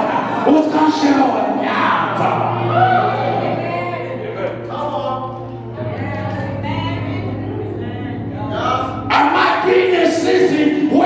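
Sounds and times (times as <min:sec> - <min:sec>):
voices singing gospel: 0:00.0 - 0:11.0
held low accompanying note: 0:02.2 - 0:10.7.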